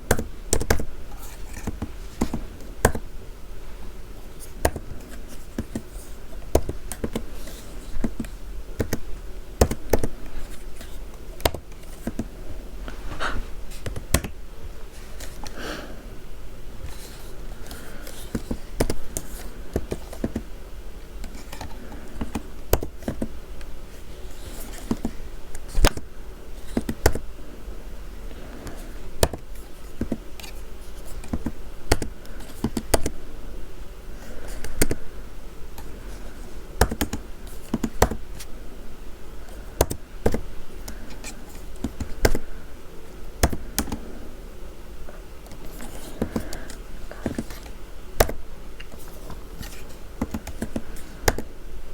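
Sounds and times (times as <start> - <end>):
keyboard typing: 4.6 - 12.3, 45.4 - 51.5.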